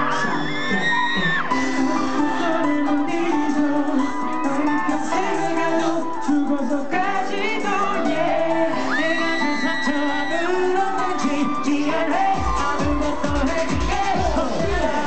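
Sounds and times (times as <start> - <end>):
person singing: 0.0 - 15.0
pop backing music: 0.0 - 15.0
kick drum beat: 12.4 - 15.0.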